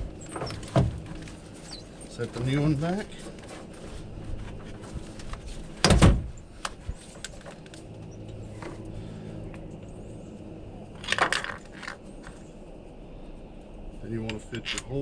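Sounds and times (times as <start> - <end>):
car battery thump: 5.8 - 6.4.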